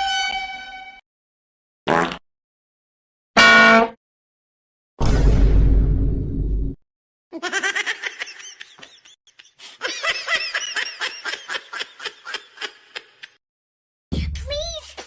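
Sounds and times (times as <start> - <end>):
high-pitched laugh: 7.4 - 13.4.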